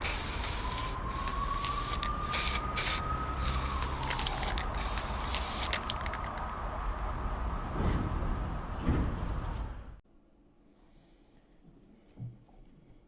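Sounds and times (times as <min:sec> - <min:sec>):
bursts of hissing noise: 0:00.0 - 0:06.2.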